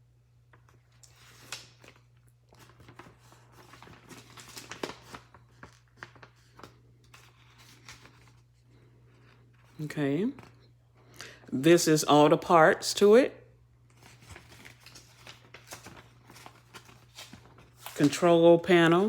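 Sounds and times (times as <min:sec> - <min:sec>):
paper rustling and crinkling: 0:00.5 - 0:10.7, 0:13.9 - 0:19.0.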